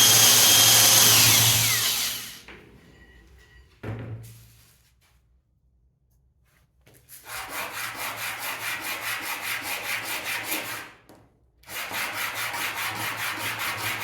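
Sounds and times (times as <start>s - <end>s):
wood sanding rasp: 0.0s - 2.4s, 7.2s - 10.8s, 11.7s - 14.0s.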